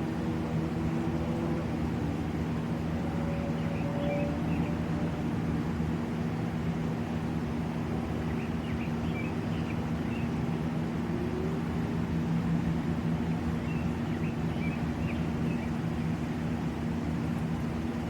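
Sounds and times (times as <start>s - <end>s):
low motor drone: 0.0s - 9.0s, 9.8s - 18.0s.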